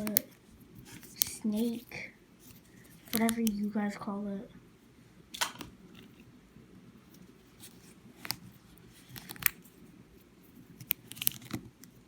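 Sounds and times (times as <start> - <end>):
plastic links clicking: 3.0 - 3.6.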